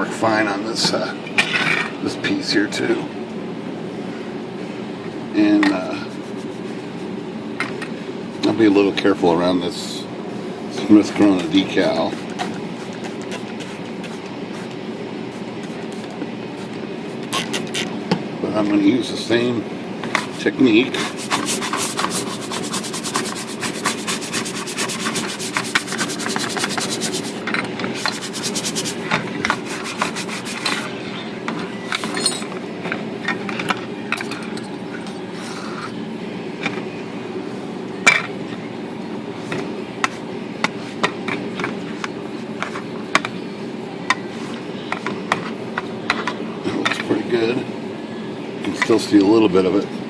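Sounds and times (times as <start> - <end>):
stiff brush scrubbing metal: 20.2 - 27.4, 28.0 - 30.9.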